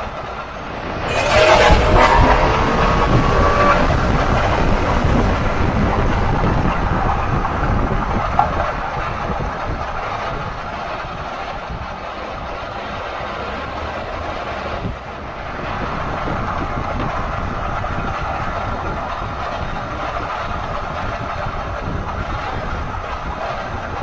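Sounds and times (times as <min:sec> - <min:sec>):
truck road and drivetrain drone: 0:00.6 - 0:11.2.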